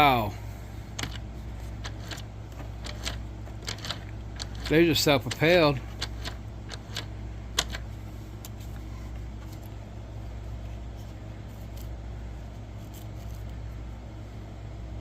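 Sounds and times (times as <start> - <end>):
sharp clicks: 1.8 - 8.6.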